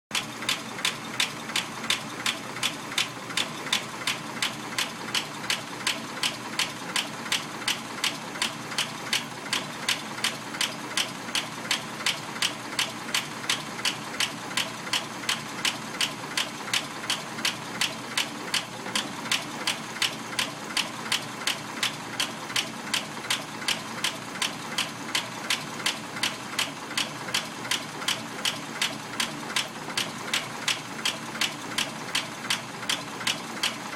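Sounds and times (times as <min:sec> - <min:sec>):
valve lifter ticking: 0:00.2 - 0:33.8.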